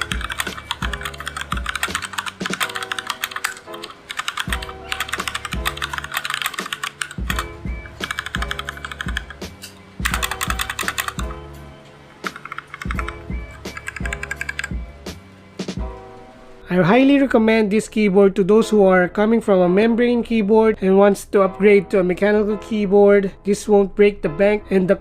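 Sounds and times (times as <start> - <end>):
mechanical keyboard typing: 0.0 - 11.4, 12.2 - 14.8
background music with low beat: 0.0 - 16.7.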